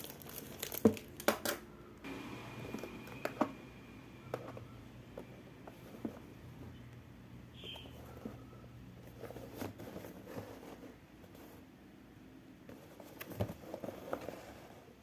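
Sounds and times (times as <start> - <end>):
packaging rustling and clicks: 0.0 - 1.6.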